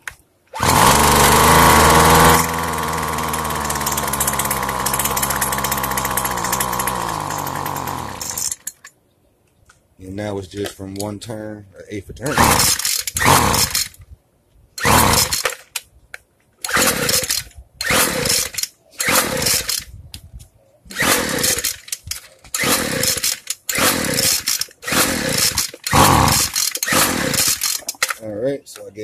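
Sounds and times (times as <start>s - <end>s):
string trimmer engine pull-starting: 0.5s - 8.8s, 12.4s - 14.0s, 14.8s - 15.6s, 16.6s - 19.8s, 20.9s - 28.2s.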